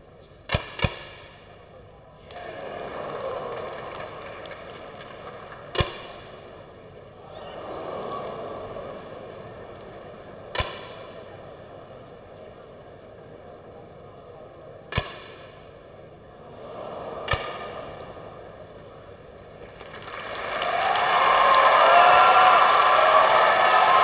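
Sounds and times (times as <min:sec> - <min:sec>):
air rifle shots: 0:17.3 - 0:17.8.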